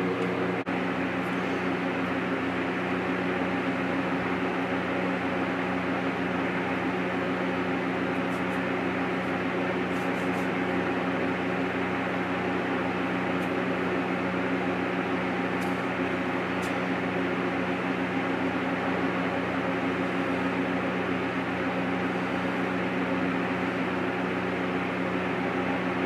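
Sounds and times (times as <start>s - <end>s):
steady motor hum and hiss: 0.0s - 26.0s.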